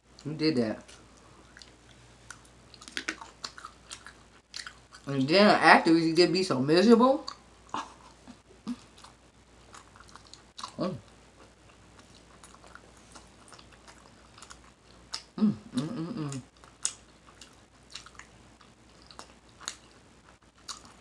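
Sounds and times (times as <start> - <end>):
mouth chewing food: 0.1 - 5.2, 7.2 - 21.0
wavering throat vocal sound: 15.4 - 16.4.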